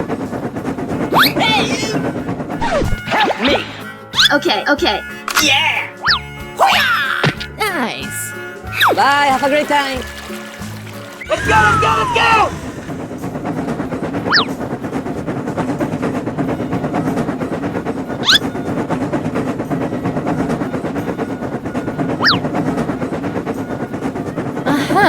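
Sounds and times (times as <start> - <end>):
train wheels clattering: 0.0 - 5.4, 7.4 - 25.0
whistle-like chirps: 6.0 - 6.4, 14.2 - 14.6, 18.2 - 18.6, 22.1 - 22.5.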